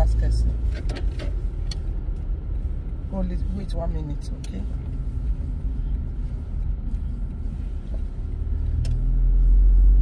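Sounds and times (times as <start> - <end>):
car engine and road noise: 0.0 - 10.0.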